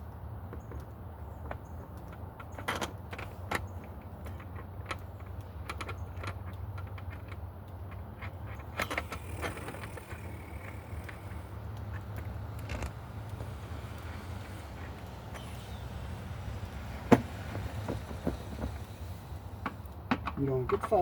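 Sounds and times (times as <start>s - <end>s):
metallic clicks of screws: 1.5s - 15.8s.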